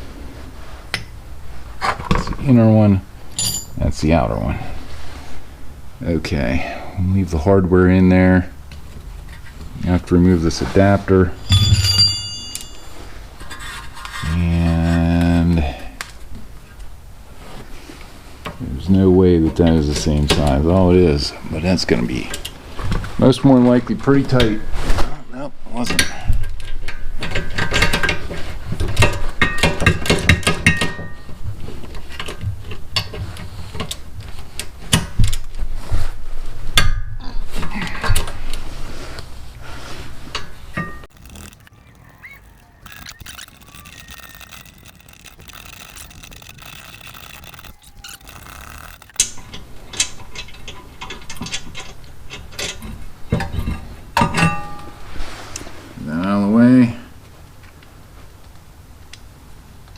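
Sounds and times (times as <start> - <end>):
metal parts clinking and knocking: 3.4 - 3.8, 41.1 - 49.3
socket ratchet clicking: 41.1 - 49.3.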